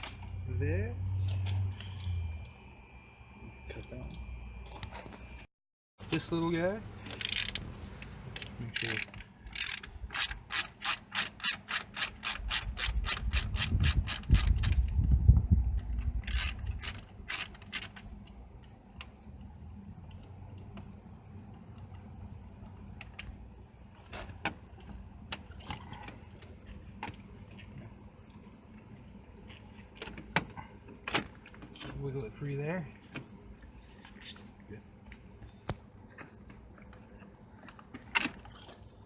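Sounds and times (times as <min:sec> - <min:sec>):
hand ratchet clicking: 0:07.1 - 0:07.6, 0:08.4 - 0:14.9, 0:16.2 - 0:18.0.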